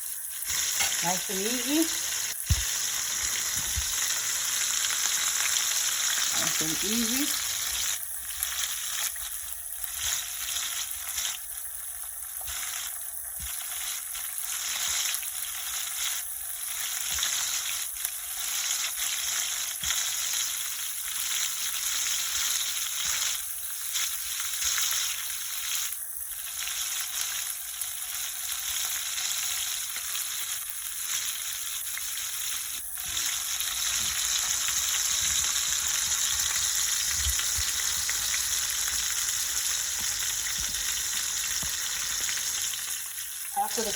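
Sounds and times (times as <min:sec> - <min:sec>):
fish sizzling in hot oil: 0:00.0 - 0:43.9.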